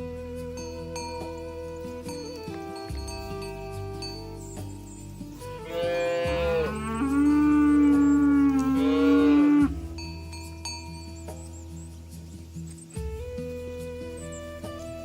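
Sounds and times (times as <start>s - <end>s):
soft background music: 0.0s - 15.0s
cow mooing: 5.6s - 9.8s.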